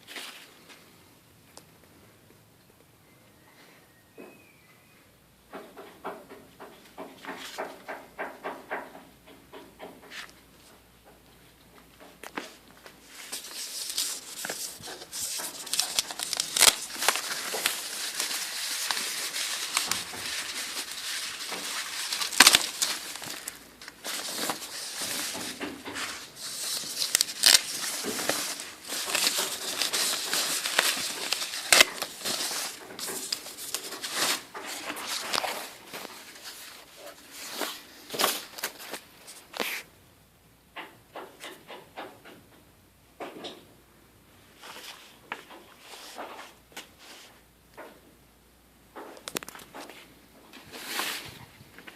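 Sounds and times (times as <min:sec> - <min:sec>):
packing material rustling: 0:12.4 - 0:39.8.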